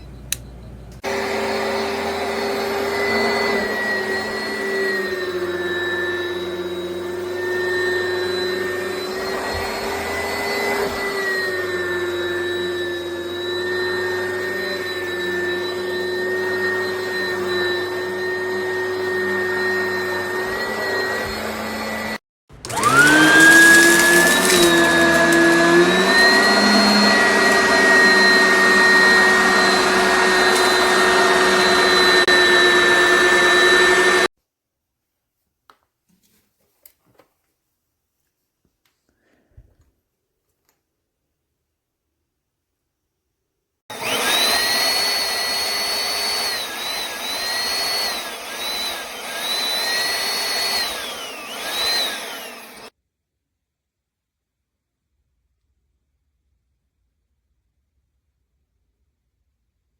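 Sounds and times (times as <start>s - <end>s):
vacuum cleaner motor whine: 0.3s - 34.3s, 43.9s - 52.9s.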